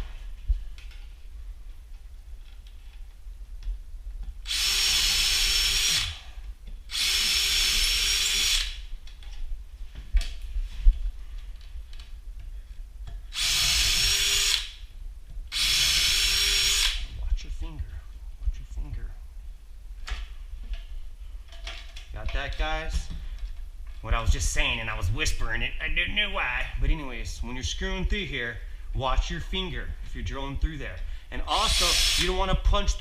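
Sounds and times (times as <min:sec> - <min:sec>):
cordless drill whine: 0:04.5 - 0:06.3, 0:06.9 - 0:08.8, 0:13.3 - 0:14.8, 0:15.5 - 0:17.0, 0:31.5 - 0:32.4.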